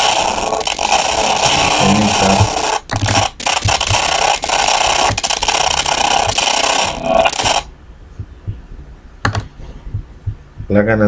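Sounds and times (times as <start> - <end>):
harsh rasping synthetic hiss: 0.0 - 7.7.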